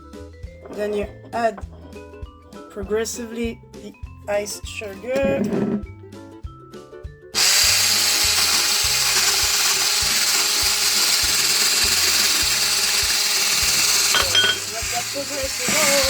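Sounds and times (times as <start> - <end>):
background music with steady beat: 0.0 - 16.0
electric hand mixer running: 7.4 - 16.0.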